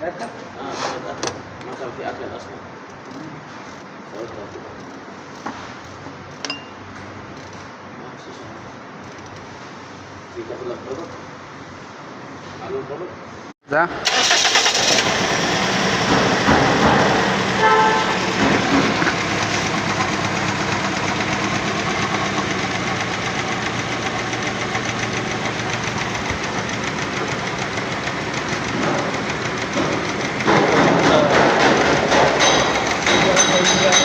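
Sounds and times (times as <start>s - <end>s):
car engine idling unevenly: 14.0s - 34.0s.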